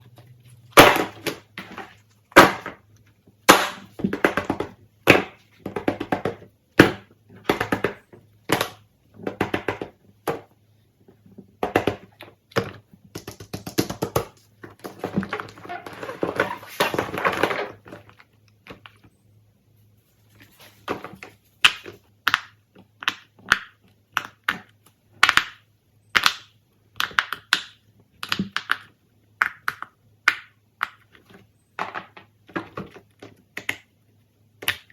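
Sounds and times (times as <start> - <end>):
plastic toy clicks and pops: 21.6 - 31.1.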